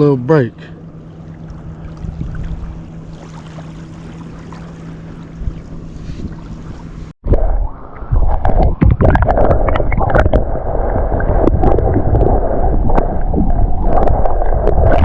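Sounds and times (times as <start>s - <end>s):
water splashing against kayak: 1.1s - 15.0s
heavy low rumble: 4.8s - 15.0s.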